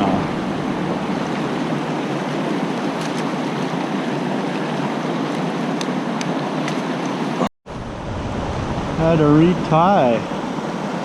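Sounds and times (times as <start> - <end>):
creek water rushing over rocks: 0.0 - 7.5.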